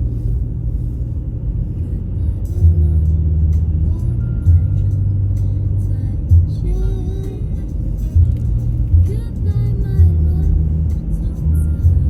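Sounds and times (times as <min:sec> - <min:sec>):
music with heavy bass and melody: 0:02.5 - 0:12.0.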